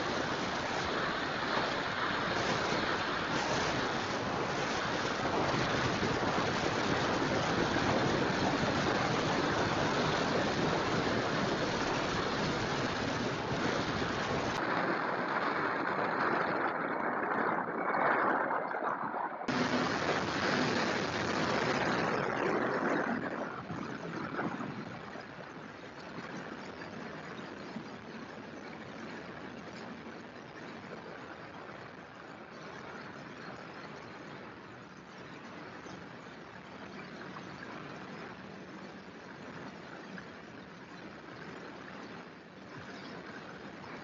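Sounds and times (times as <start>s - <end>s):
surf breaking: 0.0s - 25.0s
wind buffeting microphone: 0.0s - 34.8s.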